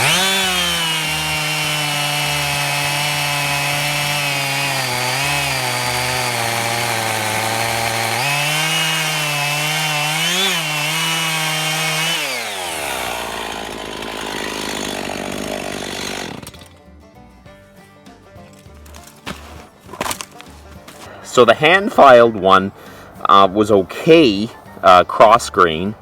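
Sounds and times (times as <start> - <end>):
chainsaw cutting wood: 0.0 - 16.8.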